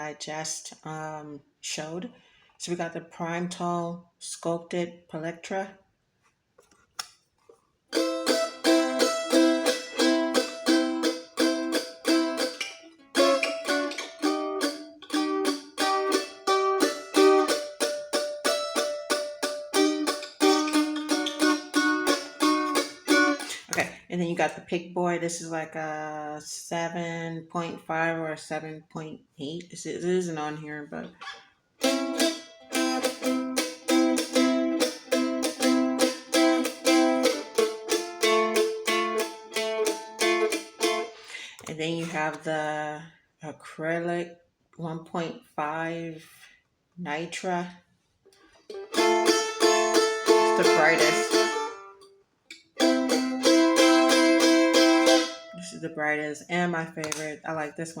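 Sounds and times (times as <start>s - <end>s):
mandolin plucked chords: 7.9s - 24.6s, 30.9s - 42.8s, 48.6s - 57.7s.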